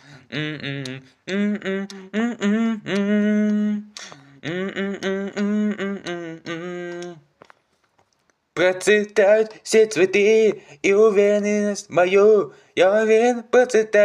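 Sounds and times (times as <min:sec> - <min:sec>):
man humming a melody: 0:00.0 - 0:07.3.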